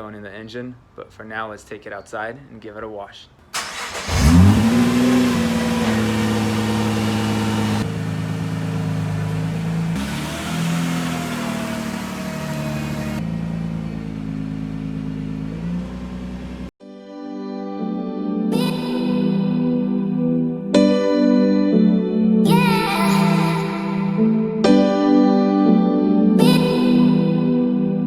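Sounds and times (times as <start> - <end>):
car engine revving and idling: 3.6 - 16.8.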